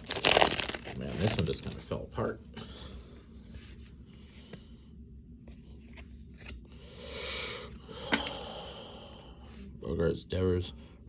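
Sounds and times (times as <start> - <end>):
card rustle: 0.0 - 1.9
low steady hum: 0.0 - 11.0.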